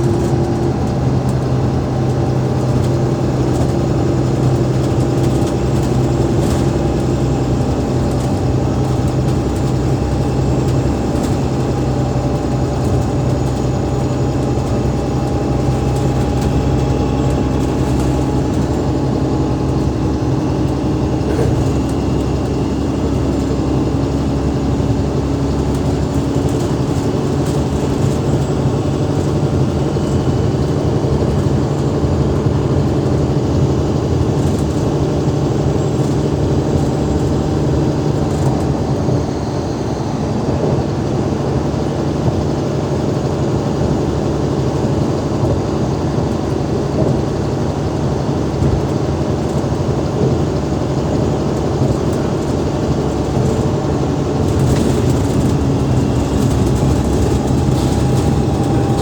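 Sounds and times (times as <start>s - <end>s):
bus diesel engine drone: 0.0s - 59.0s.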